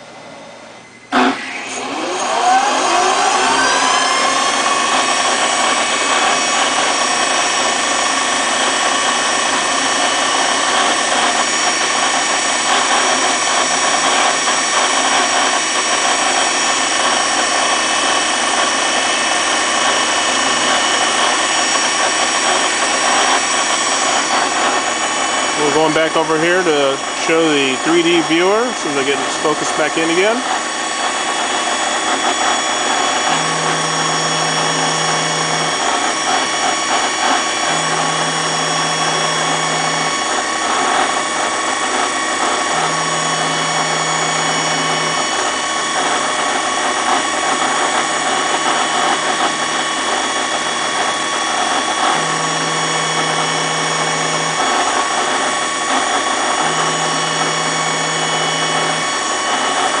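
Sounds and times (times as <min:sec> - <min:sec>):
milling machine whine: 0:00.0 - 1:00.0
low machine hum: 0:23.0 - 1:00.0.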